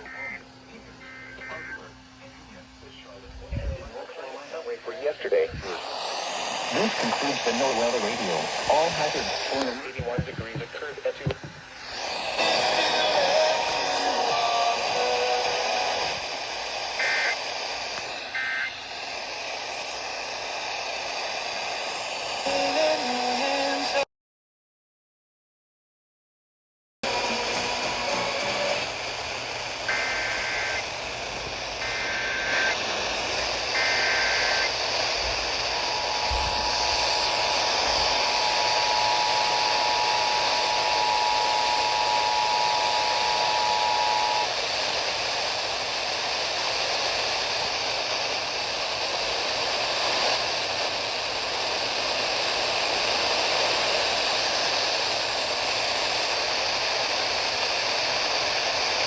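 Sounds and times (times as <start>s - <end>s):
radio static hiss: 0.0s - 24.0s, 27.1s - 59.0s
warbling digital data bursts: 33.4s - 35.2s.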